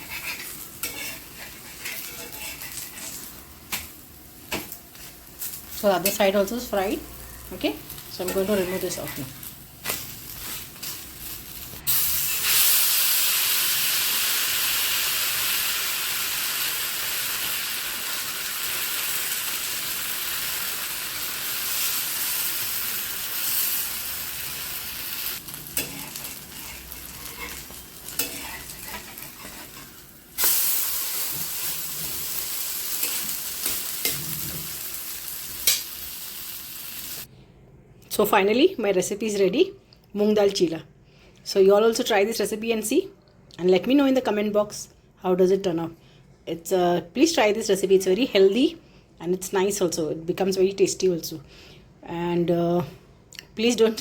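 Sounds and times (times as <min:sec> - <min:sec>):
batter sizzling in hot oil: 0:04.9 - 0:37.3.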